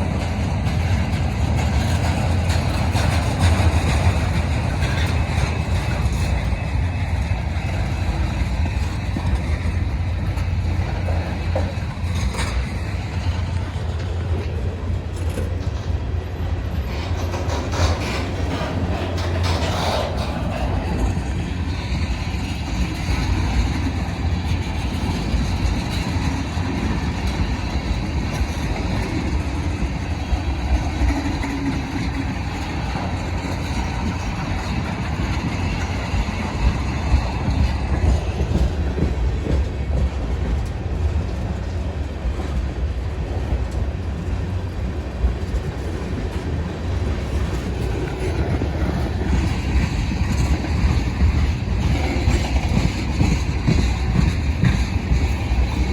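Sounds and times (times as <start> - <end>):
freight train wheels rumbling: 0.0 - 55.9.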